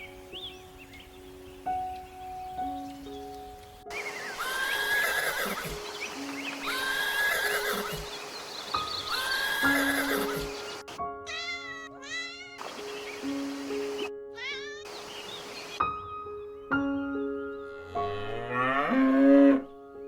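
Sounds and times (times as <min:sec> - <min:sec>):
light background music: 0:00.0 - 0:20.0
animal calls: 0:03.9 - 0:08.2, 0:08.9 - 0:10.9.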